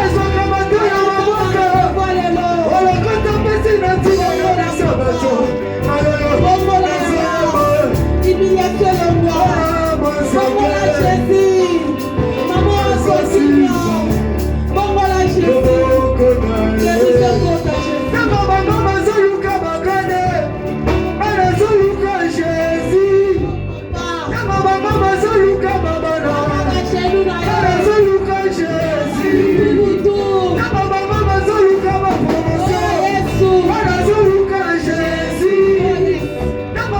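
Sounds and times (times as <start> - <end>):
instrumental accompaniment with bass: 0.0 - 36.9
voices singing worship music: 0.0 - 36.9.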